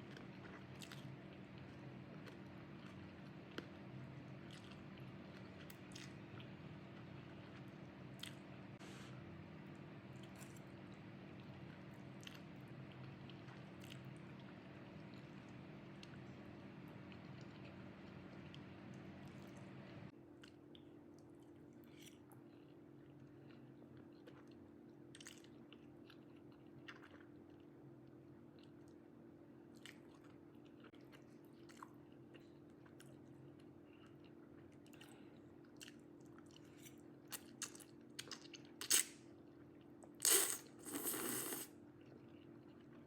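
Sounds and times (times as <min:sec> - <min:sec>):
person chewing: 0:00.0 - 0:03.8, 0:04.4 - 0:08.5, 0:12.1 - 0:15.4, 0:21.8 - 0:27.3, 0:30.9 - 0:39.1, 0:40.1 - 0:43.0.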